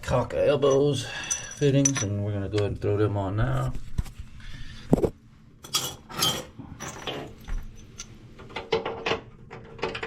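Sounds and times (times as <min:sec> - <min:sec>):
metal fittings clinking and rattling: 0:00.6 - 0:02.2, 0:05.6 - 0:08.2.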